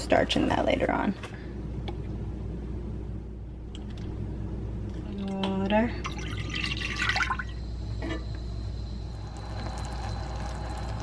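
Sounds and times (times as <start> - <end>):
steady low hum: 0.0 - 11.0
liquid pouring into a saucepan: 6.0 - 7.6, 9.1 - 11.0.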